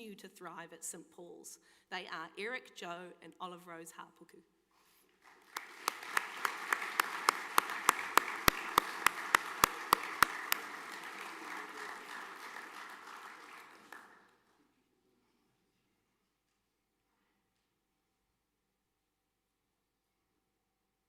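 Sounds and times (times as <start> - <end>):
close sharp hand claps: 5.2 - 14.5
audience applauding: 5.2 - 14.6.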